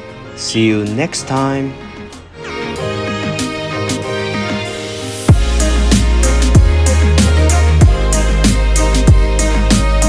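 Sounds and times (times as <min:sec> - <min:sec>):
electronic music: 0:00.2 - 0:10.0
deep bass line: 0:05.3 - 0:10.0.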